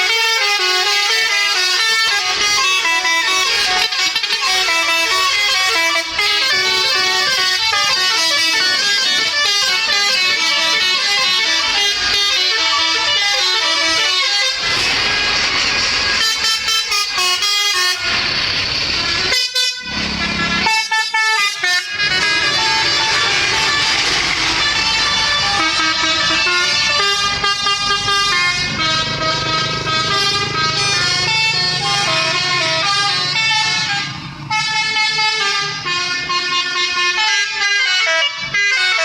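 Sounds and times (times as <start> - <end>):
multi-note air horns jingle: 0.0 - 39.0
short broken horn blasts: 0.0 - 39.0
rushing noise: 13.8 - 20.6, 21.9 - 26.9.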